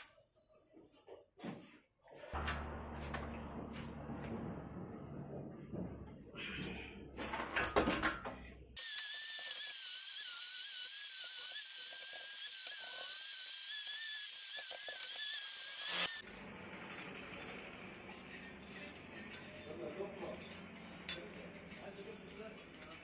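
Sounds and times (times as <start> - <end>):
high-speed tool whining: 8.8 - 16.2.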